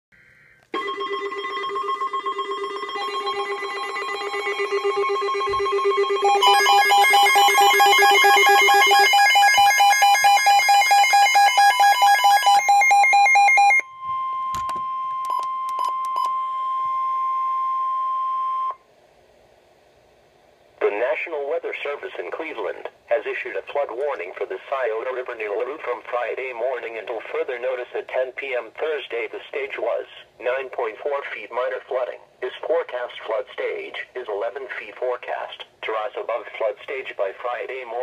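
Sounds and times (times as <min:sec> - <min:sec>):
steady alarm tone: 0:00.2 - 0:18.8
rapidly pulsing electronic beeps: 0:02.2 - 0:13.8.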